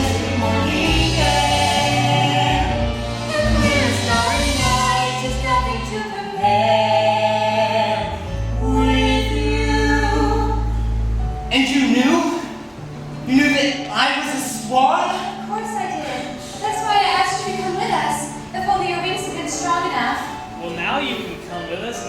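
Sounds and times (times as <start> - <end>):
cast singing together: 0.0 - 10.6.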